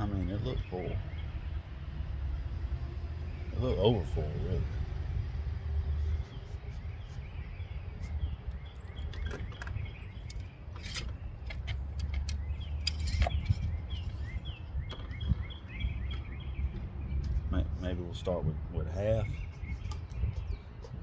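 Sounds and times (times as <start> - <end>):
small bird chirping: 6.0 - 17.5, 19.2 - 21.0
handling clicks and knocks: 8.6 - 13.8.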